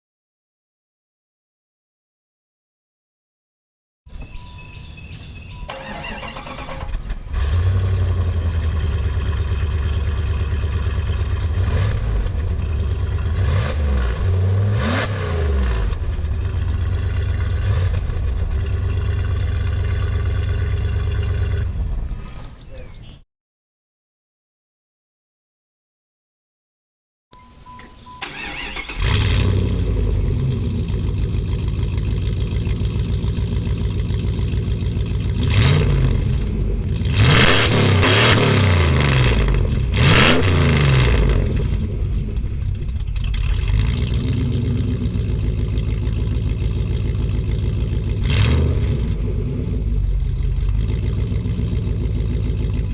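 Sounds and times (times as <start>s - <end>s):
car engine starting and idling: 4.1s - 23.2s, 27.4s - 52.9s
engine revving: 5.5s - 22.6s, 28.0s - 52.9s.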